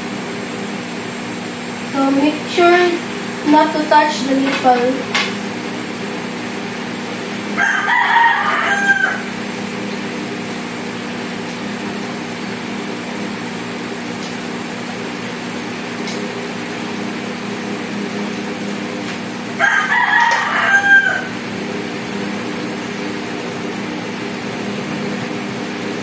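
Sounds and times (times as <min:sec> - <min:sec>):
steady mechanical hum: 0:00.0 - 0:26.0
rooster crowing: 0:07.4 - 0:09.5, 0:19.5 - 0:21.5.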